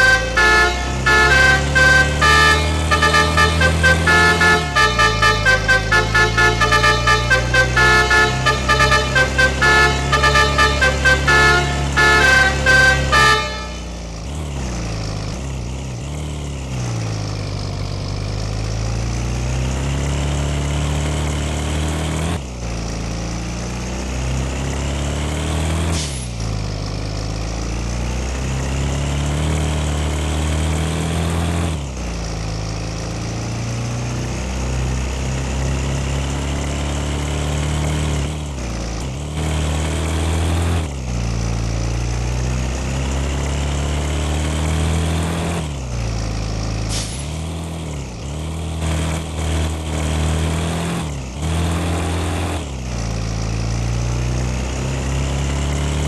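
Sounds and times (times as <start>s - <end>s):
multi-tone horn tooting a tune: 0.0s - 14.0s.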